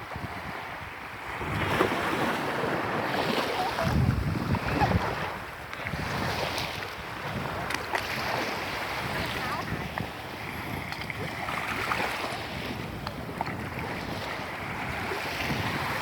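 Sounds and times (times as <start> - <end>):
waves washing onto beach: 0.0 - 16.0
wind buffeting microphone: 0.0 - 16.0.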